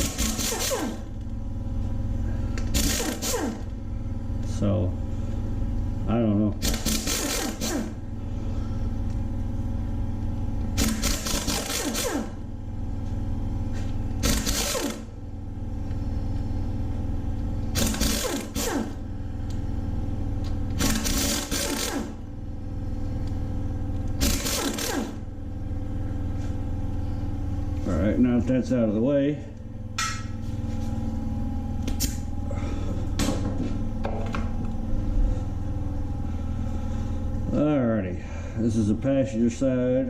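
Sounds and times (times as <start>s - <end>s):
pneumatic impact wrench bursts: 0.0s - 1.1s, 2.6s - 3.7s, 6.6s - 8.0s, 10.8s - 12.4s, 14.2s - 15.1s, 17.7s - 19.0s, 20.7s - 22.2s, 24.2s - 25.3s
steady low hum: 0.0s - 40.0s.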